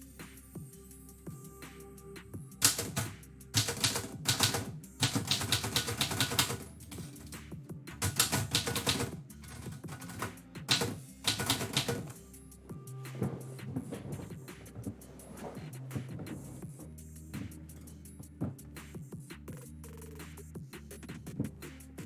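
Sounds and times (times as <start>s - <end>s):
typewriter keys striking: 2.6s - 7.4s, 8.0s - 12.2s.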